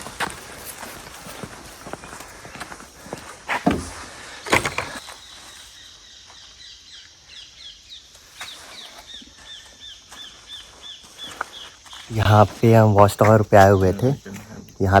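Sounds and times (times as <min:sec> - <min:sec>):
loud rustling thuds: 0:03.4 - 0:05.0
bird chirping: 0:04.7 - 0:15.0.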